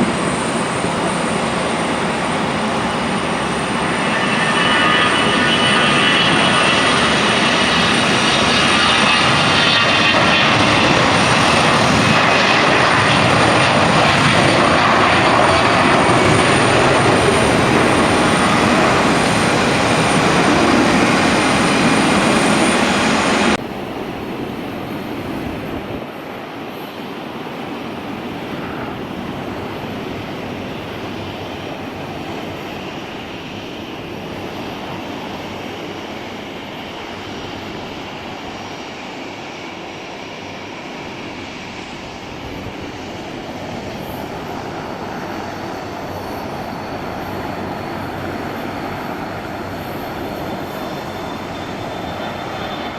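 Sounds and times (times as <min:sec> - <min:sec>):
airliner engines running: 0:00.0 - 0:52.9
high-pitched engine whine: 0:00.0 - 0:52.9.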